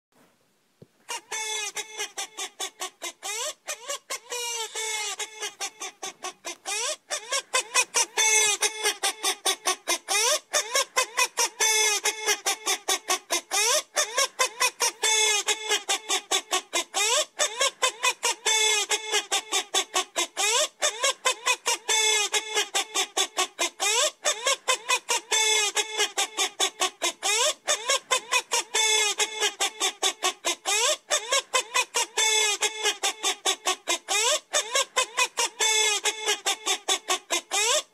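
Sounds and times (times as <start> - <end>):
bird honking calls: 1.1 - 19.6.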